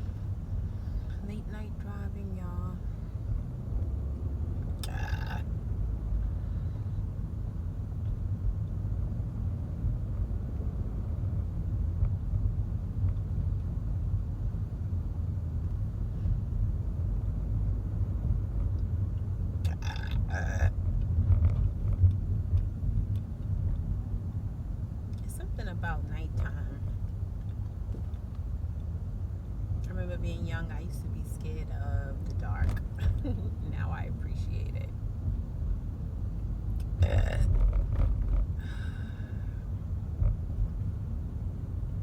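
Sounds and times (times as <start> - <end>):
road rumble inside a car: 0.0 - 42.0
woman burping: 4.8 - 5.4, 19.7 - 20.7, 37.0 - 37.5.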